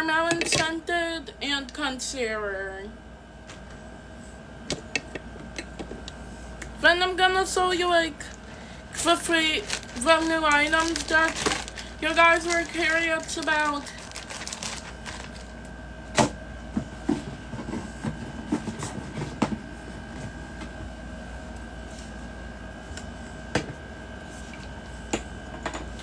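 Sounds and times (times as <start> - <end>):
faint electrical hum: 0.0 - 26.0
items rummaged in a bag: 8.4 - 15.8.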